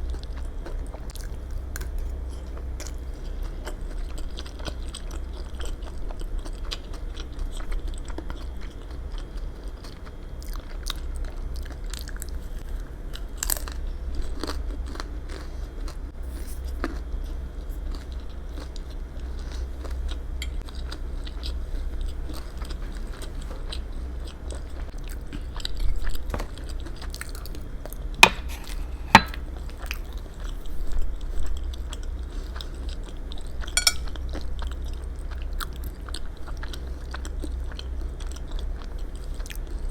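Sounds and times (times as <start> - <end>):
steady low hum: 16.1 - 22.3, 26.5 - 35.0.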